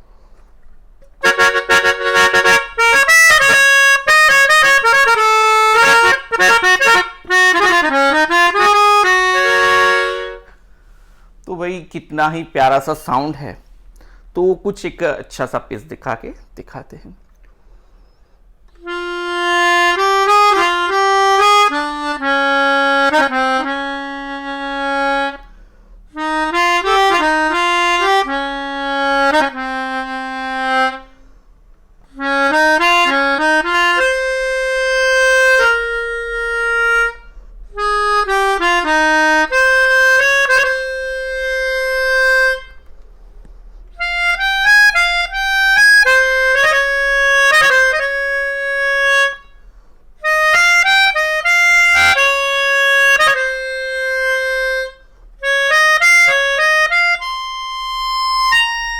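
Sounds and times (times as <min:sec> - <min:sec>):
melodica melody: 0:01.0 - 0:10.6, 0:18.7 - 0:31.3, 0:32.1 - 0:43.0, 0:43.8 - 0:58.9.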